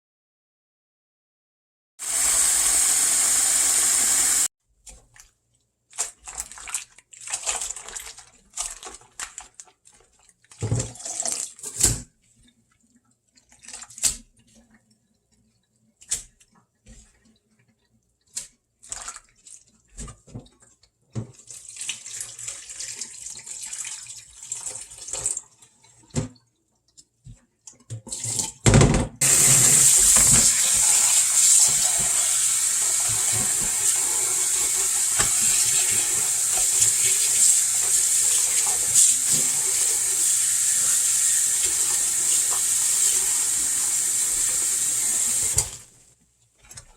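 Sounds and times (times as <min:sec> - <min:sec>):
tap running into a sink: 0:28.0 - 0:45.8.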